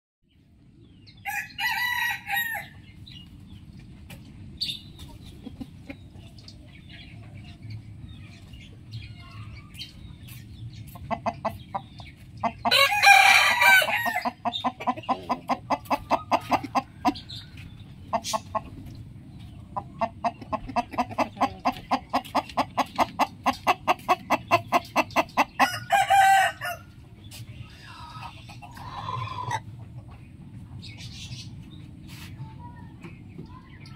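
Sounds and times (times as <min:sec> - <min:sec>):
rooster crowing: 0:01.3 - 0:02.7, 0:12.7 - 0:14.3, 0:25.6 - 0:26.9
rapid rhythmic clucking: 0:10.3 - 0:12.7, 0:14.3 - 0:25.6.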